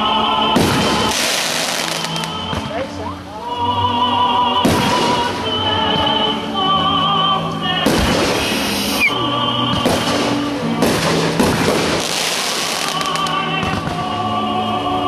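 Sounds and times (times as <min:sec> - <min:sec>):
fireworks bursting and crackling: 0:00.0 - 0:03.0, 0:04.6 - 0:06.4, 0:07.6 - 0:14.4
loud music with held notes: 0:00.0 - 0:15.0.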